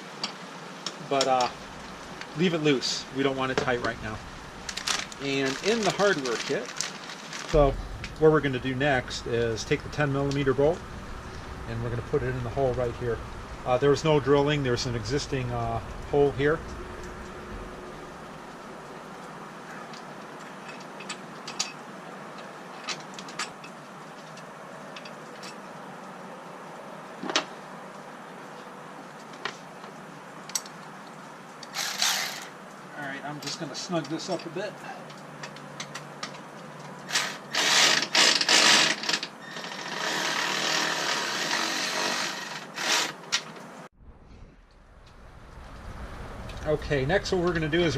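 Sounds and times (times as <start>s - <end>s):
steady background hiss: 0.0s - 43.9s, 44.8s - 47.9s
power tool bursts: 31.7s - 32.5s, 37.1s - 43.2s.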